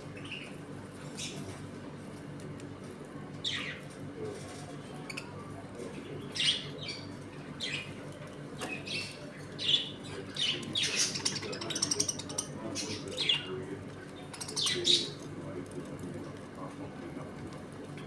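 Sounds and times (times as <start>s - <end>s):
budgerigars chirping and chattering: 0.2s - 1.5s, 3.4s - 8.0s, 8.6s - 15.3s.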